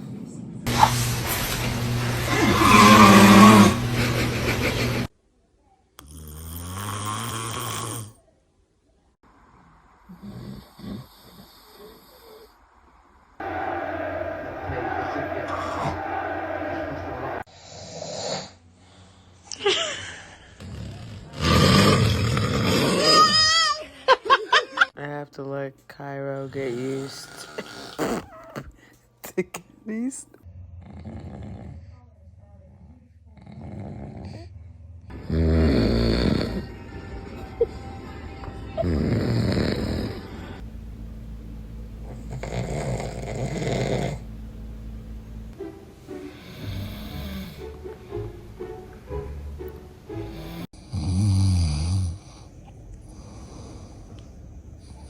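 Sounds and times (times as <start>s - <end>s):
man snoring: 2.0s - 5.0s, 6.0s - 8.2s, 10.1s - 12.5s, 20.6s - 23.4s, 26.5s - 28.7s, 30.8s - 31.8s, 35.1s - 37.8s, 38.8s - 40.6s, 42.1s - 44.3s, 46.2s - 47.8s, 50.2s - 52.5s
quiet breathing: 9.3s - 13.4s, 17.5s - 21.3s, 46.1s - 48.3s, 50.1s - 50.9s, 52.1s - 55.0s.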